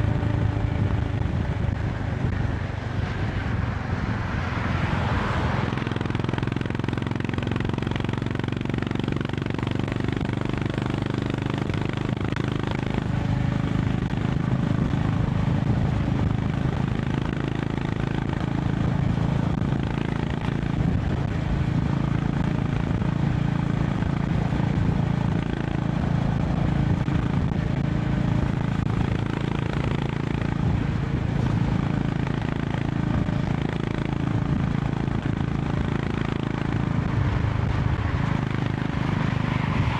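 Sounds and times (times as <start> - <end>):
motorcycle engine cruising: 0.0 - 39.9
wind and road noise: 0.0 - 39.9.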